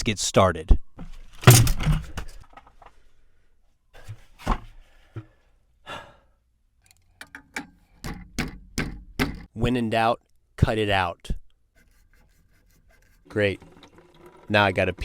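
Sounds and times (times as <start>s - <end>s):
person sighing heavily: 5.8s - 6.4s
knocks and clicks on pipes: 7.2s - 9.5s.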